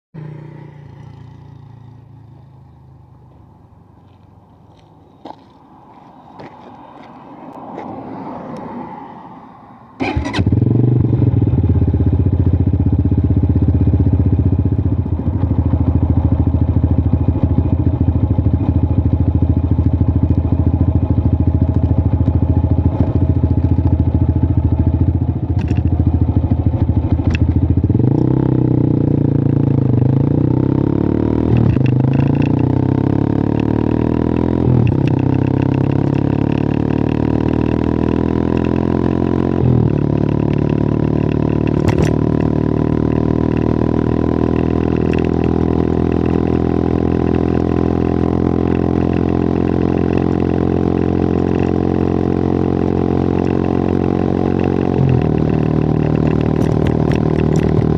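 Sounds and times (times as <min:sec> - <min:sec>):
motorcycle engine idling: 0:10.0 - 0:29.8, 0:55.0 - 0:57.9.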